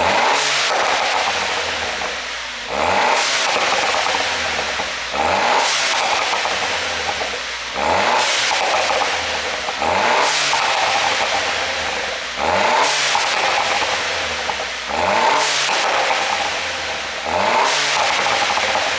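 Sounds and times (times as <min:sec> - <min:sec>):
car engine revving: 0:00.0 - 0:18.9
exhaust pops and crackles: 0:12.9 - 0:18.9.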